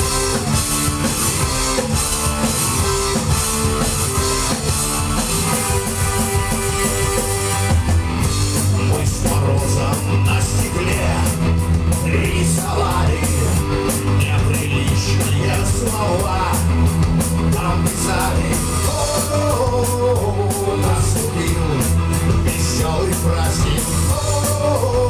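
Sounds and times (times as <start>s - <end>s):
bass guitar: 0.0s - 25.0s
drum kit with cymbal hits: 0.0s - 25.0s
electric guitar: 0.0s - 25.0s.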